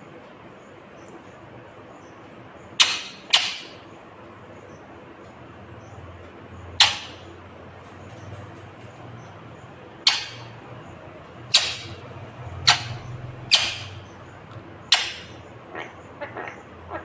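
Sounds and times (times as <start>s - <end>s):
parakeet screeching: 2.8s - 3.8s, 6.8s - 7.3s, 10.0s - 16.6s.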